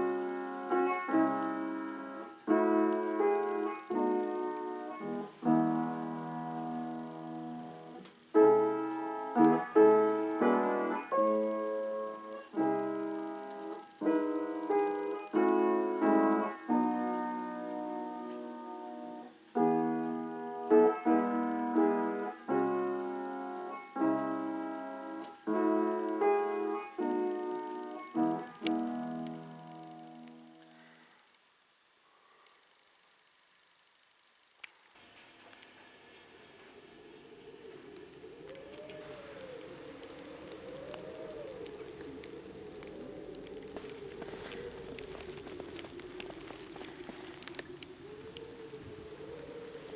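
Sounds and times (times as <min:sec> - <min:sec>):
solo piano music: 0:00.0 - 0:30.6.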